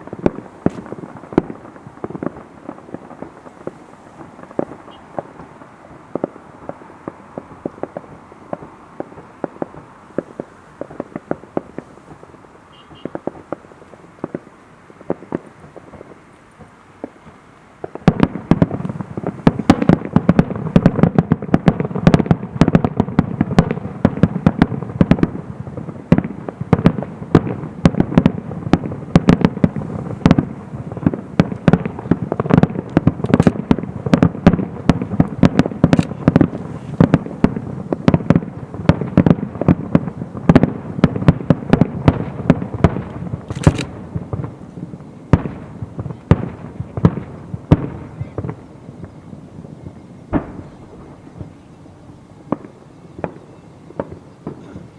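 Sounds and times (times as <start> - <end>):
fireworks bursting: 0.0 - 54.9.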